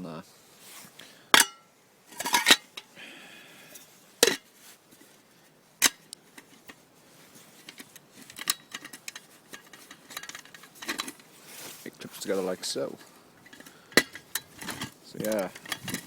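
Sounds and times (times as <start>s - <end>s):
metal parts knocking: 13.5s - 16.0s.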